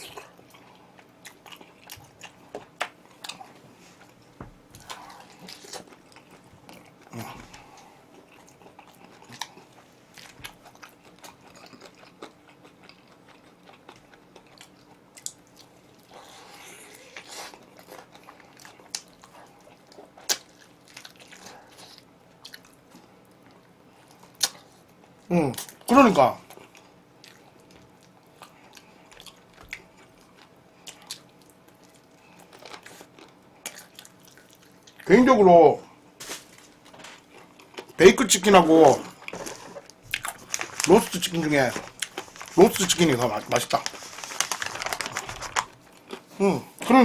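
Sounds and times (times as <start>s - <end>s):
person chewing crispy chicken: 0.0s - 4.2s, 4.8s - 25.8s, 26.4s - 35.1s, 36.3s - 38.0s, 39.1s - 46.4s.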